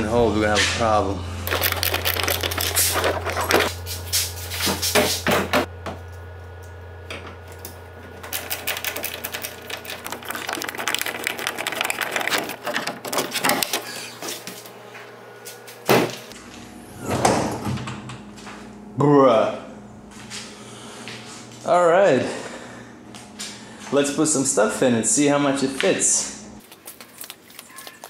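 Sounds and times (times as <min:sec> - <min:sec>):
plastic parts clicking and rattling: 0:01.5 - 0:03.7, 0:08.3 - 0:13.9.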